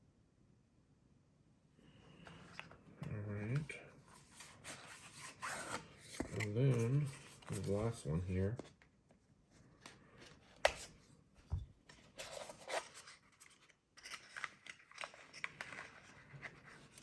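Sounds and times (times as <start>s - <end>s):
packaging rustling and scraping: 3.5s - 8.6s, 11.8s - 17.0s.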